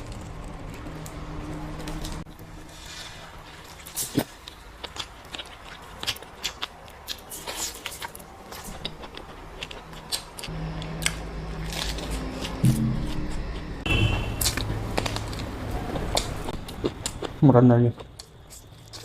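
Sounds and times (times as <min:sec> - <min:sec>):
person chewing meat: 0:03.7 - 0:13.7, 0:14.4 - 0:17.4, 0:18.0 - 0:19.0
low steady hum: 0:08.8 - 0:17.4.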